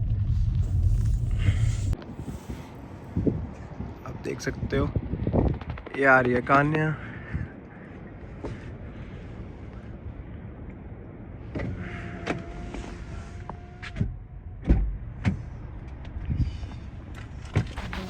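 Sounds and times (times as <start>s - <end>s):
low engine hum: 0.0s - 3.6s, 9.7s - 18.0s.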